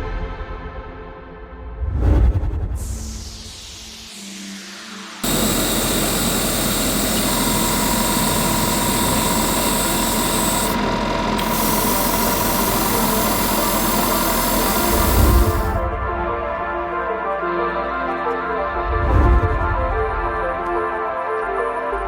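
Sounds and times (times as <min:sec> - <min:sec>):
small motor running with hiss: 0:05.2 - 0:15.8
thin steady whine: 0:05.2 - 0:15.9.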